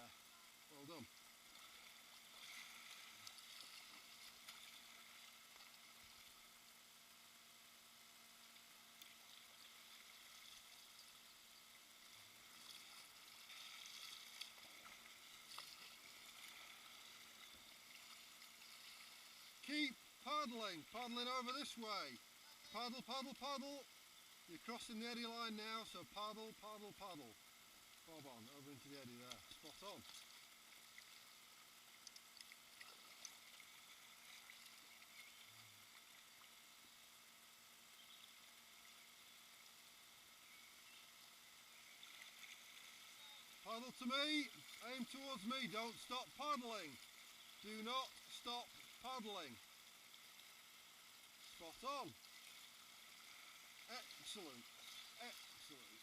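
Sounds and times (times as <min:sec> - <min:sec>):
river water flowing: 0:00.0 - 0:56.0
small ticks: 0:31.9 - 0:33.7.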